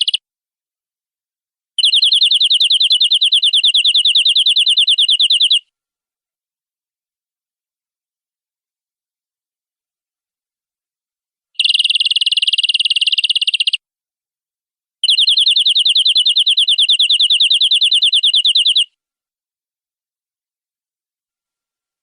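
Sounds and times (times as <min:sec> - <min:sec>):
canary singing trills: 0:00.0 - 0:00.2, 0:01.8 - 0:05.6, 0:11.6 - 0:13.8, 0:15.0 - 0:18.9.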